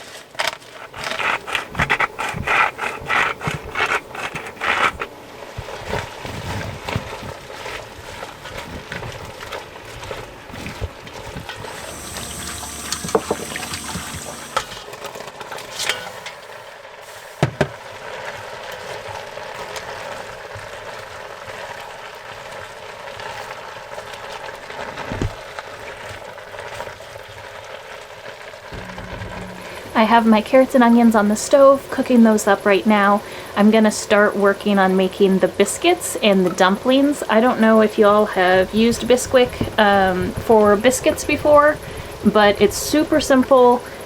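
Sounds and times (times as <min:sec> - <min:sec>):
water pouring: 0:07.0 - 0:17.4
vegetables sizzling in a pot: 0:09.6 - 0:44.0
utensils knocking and clinking: 0:11.6 - 0:16.5.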